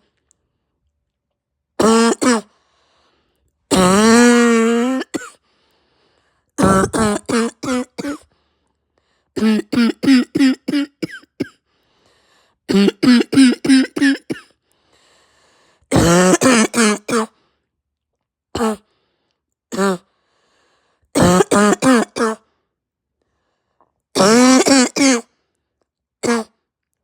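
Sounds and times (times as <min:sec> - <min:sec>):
woman coughing harshly: 0:01.8 - 0:02.5, 0:03.7 - 0:05.4, 0:06.6 - 0:08.3, 0:09.4 - 0:11.6, 0:12.7 - 0:14.6, 0:15.9 - 0:17.3, 0:18.6 - 0:18.8, 0:21.2 - 0:22.4, 0:24.2 - 0:25.3, 0:26.2 - 0:26.5.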